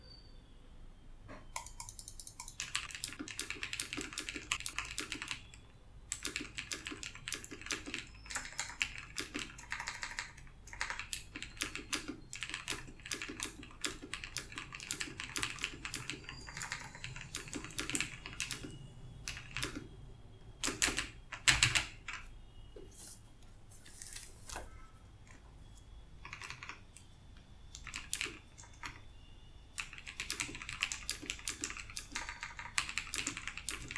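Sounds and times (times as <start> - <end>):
mechanical keyboard typing clicks: 1.6 - 20.0, 20.6 - 22.3, 26.2 - 27.1, 27.7 - 29.0, 29.8 - 33.9.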